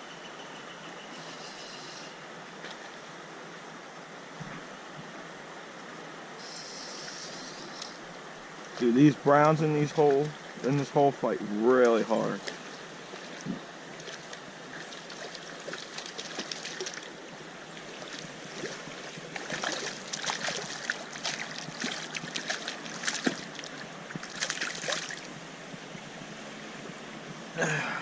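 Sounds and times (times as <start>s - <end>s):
stream water running: 0.0s - 28.0s
splashing in water: 11.8s - 25.3s.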